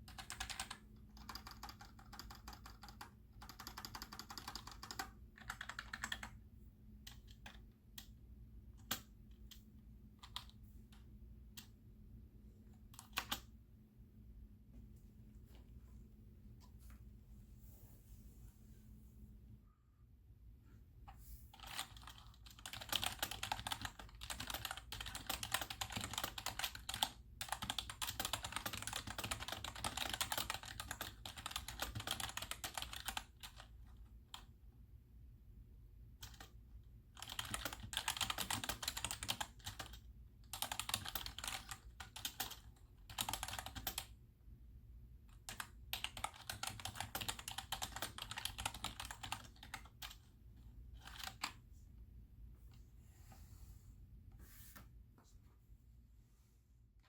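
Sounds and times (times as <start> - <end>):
fast typing on keyboard: 0.0 - 6.3, 10.2 - 10.5, 13.0 - 13.4, 21.5 - 34.5, 36.2 - 44.2, 45.3 - 50.3, 51.0 - 51.6.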